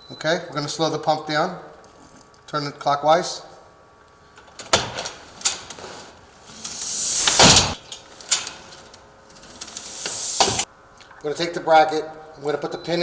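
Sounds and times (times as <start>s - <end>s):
door shutting: 6.5s - 7.8s, 9.5s - 10.6s
rush of air from door closer: 6.5s - 7.8s, 9.5s - 10.6s.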